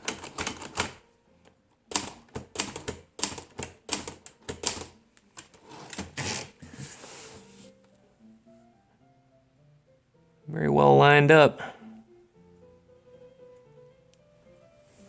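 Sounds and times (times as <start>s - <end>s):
typewriter keystrokes: 0.0s - 1.0s, 1.9s - 6.5s.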